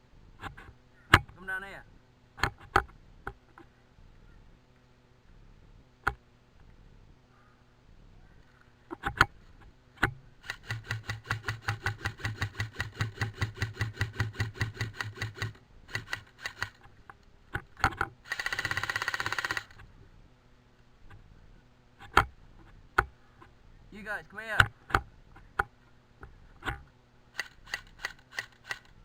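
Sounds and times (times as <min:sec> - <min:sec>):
airsoft gun clicks: 0:10.0 - 0:19.9, 0:24.6 - 0:29.0
airsoft gun full-auto burst: 0:10.4 - 0:16.8, 0:18.2 - 0:19.8, 0:27.3 - 0:29.0.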